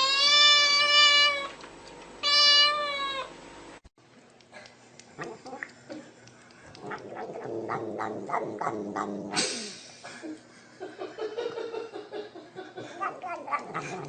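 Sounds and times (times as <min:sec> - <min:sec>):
cat meowing: 0:00.0 - 0:01.6, 0:02.2 - 0:03.3, 0:13.0 - 0:14.0.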